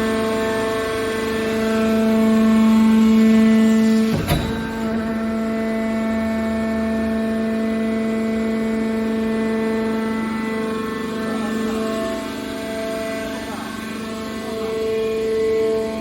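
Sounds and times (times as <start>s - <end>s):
hydraulic pump and motor whine: 0.1s - 16.0s
sharp knock: 4.1s - 5.6s.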